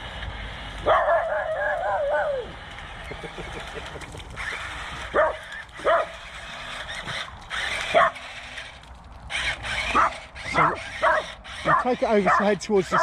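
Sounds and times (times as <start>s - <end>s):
dog barking: 0.8s - 2.4s, 5.1s - 6.1s, 7.9s - 8.2s, 9.9s - 13.0s.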